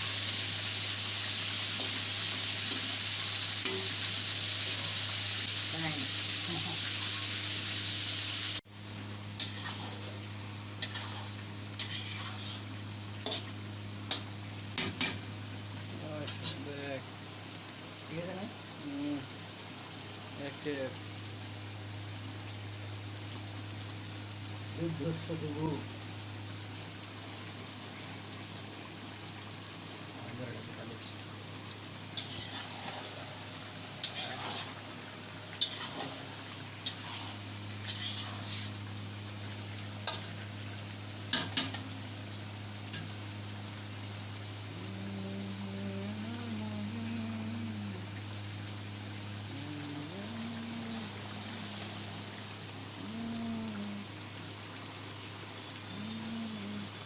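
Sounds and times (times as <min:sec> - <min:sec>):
frying sizzle: 0:00.0 - 0:57.0
spoon scraping a pan: 0:09.4 - 0:10.1, 0:10.8 - 0:13.5, 0:32.2 - 0:33.2, 0:34.0 - 0:34.8, 0:35.5 - 0:38.8.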